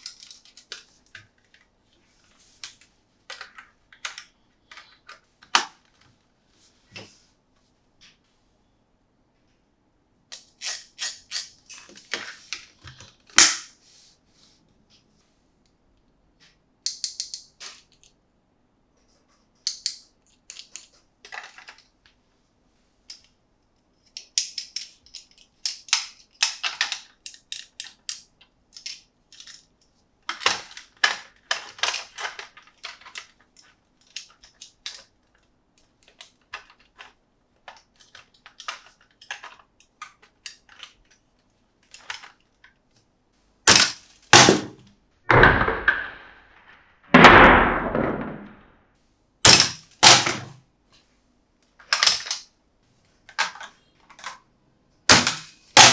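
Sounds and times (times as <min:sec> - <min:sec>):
plastic clicks: 0:00.0 - 0:01.7, 0:24.0 - 0:43.1
loud snap: 0:43.7 - 0:48.7.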